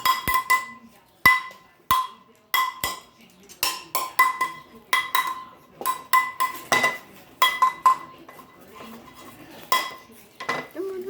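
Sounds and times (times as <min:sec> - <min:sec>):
metal pot banged with utensil: 0:00.0 - 0:08.1.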